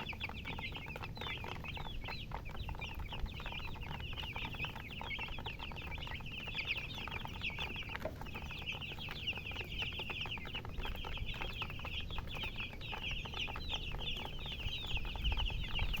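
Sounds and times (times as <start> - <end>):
baby chicks peeping: 0.0 - 16.0.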